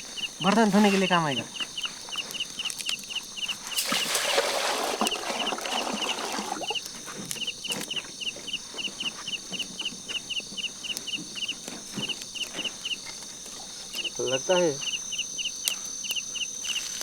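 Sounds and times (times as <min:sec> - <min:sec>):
small animal chirping: 0:00.0 - 0:03.8, 0:05.1 - 0:17.0
steady high-pitched drone: 0:14.0 - 0:17.0.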